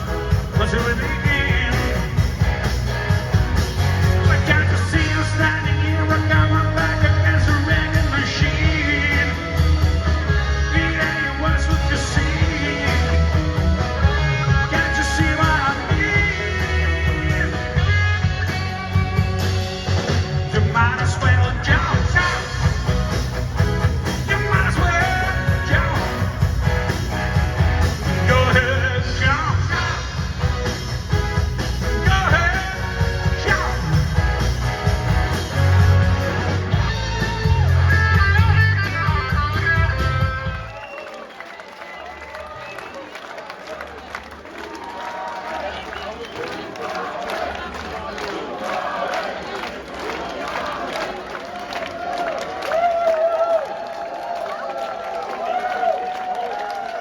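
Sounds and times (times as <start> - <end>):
electric guitar lead: 0.0 - 40.7
bass guitar: 0.0 - 40.9
live rock band playing: 0.0 - 40.9
drums: 0.0 - 43.0.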